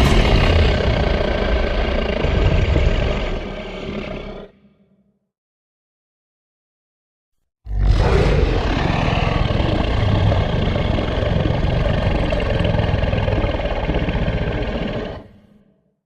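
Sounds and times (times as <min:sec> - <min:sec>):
mechanical rumble and drone: 0:00.0 - 0:03.6.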